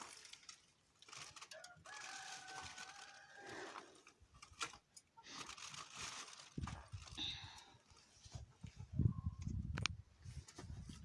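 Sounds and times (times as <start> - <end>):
faint rooster crowing: 1.5 - 3.8.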